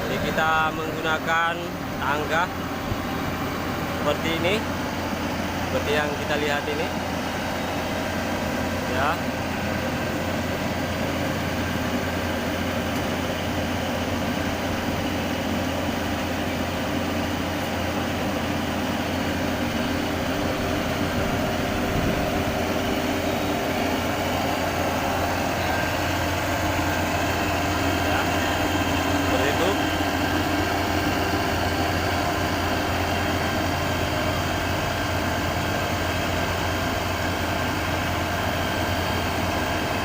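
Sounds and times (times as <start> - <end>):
combine harvester diesel engine: 0.0 - 40.0.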